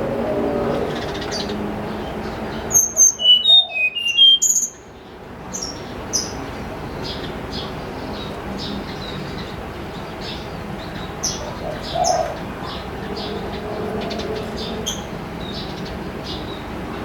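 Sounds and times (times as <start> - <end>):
steady background noise: 0.0 - 17.0
songbird whistling: 2.7 - 4.9.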